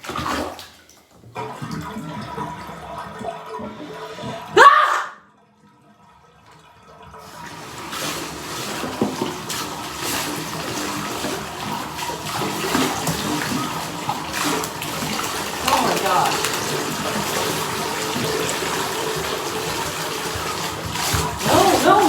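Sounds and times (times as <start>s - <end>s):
small knocks and splashes: 0.0s - 2.0s, 7.9s - 22.0s
water running in bathtub: 0.0s - 22.0s.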